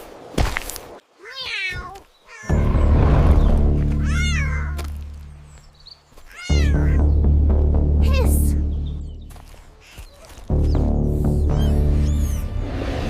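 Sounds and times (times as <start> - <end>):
kitten meowing: 4.0 - 4.8, 6.3 - 7.0
low background music: 6.5 - 9.7, 10.5 - 13.0.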